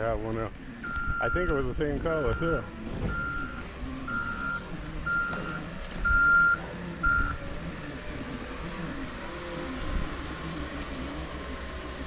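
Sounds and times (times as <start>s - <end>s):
low engine rumble: 0.0s - 12.0s
reversing alarm beeping: 0.8s - 7.4s.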